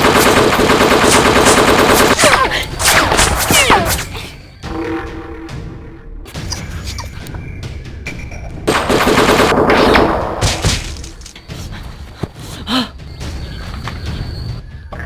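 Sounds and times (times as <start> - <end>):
rapid gunfire: 0.0 - 4.0, 8.7 - 11.1.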